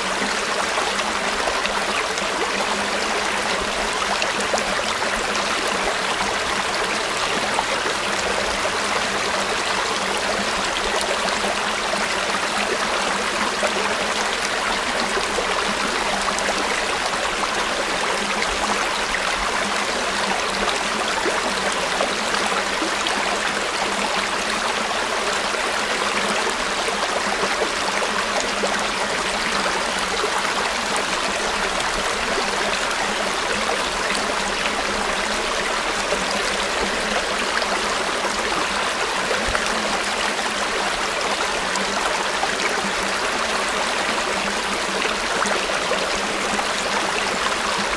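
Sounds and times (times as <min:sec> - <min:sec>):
river water flowing over stones: 0:00.0 - 0:47.9.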